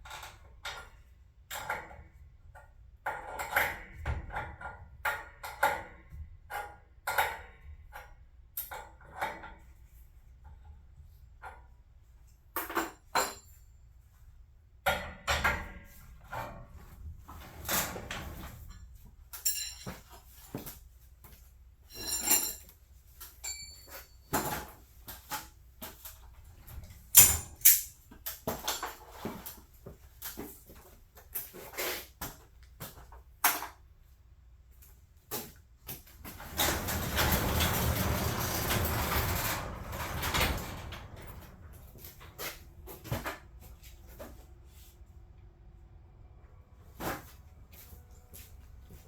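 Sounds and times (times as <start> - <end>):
metal tools clanking: 19.4 - 20.2, 21.9 - 22.7, 23.4 - 24.7, 27.1 - 28.0.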